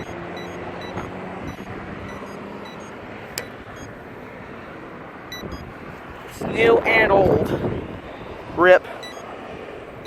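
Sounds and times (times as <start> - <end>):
pedestrian signal beeps: 0.0 - 4.0, 5.3 - 5.7, 8.9 - 9.3
street traffic noise: 0.0 - 10.0
vehicle engine hum: 0.0 - 10.0.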